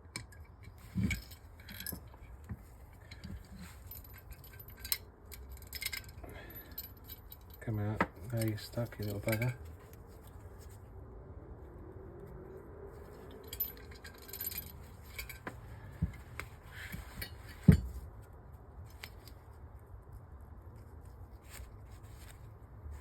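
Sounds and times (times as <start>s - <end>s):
small metal parts clinking: 0.1s - 9.9s, 13.0s - 18.0s.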